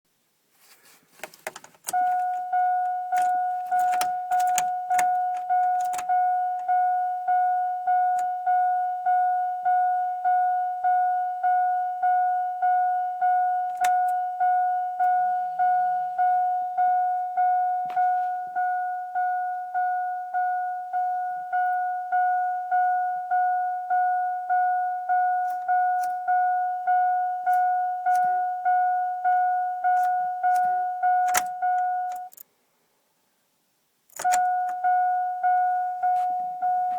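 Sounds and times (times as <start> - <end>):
keys clicking and rattling: 1.2 - 2.5, 3.1 - 6.1, 31.3 - 32.4
dashboard warning chime dinging: 1.2 - 32.4, 34.2 - 36.9.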